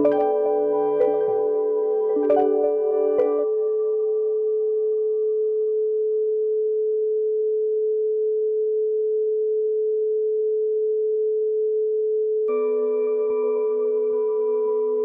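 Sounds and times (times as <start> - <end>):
singing bowl tone: 0.0 - 7.2, 12.5 - 15.0.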